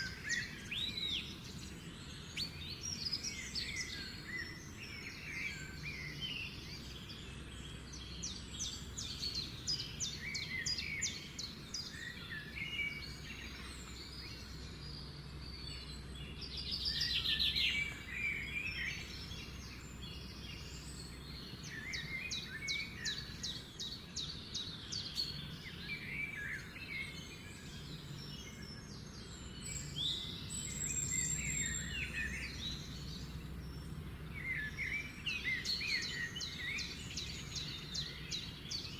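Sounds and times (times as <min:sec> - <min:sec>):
birds chirping and twittering: 0:00.0 - 0:38.9
bird trill: 0:29.7 - 0:38.9.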